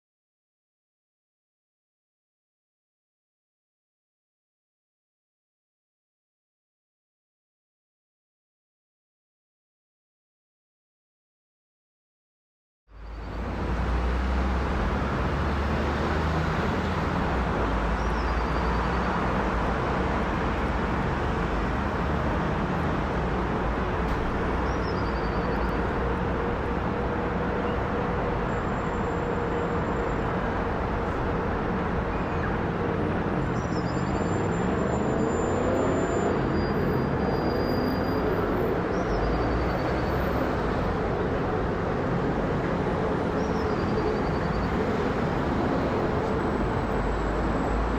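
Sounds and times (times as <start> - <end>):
jet engines at takeoff: 34.4 - 47.9.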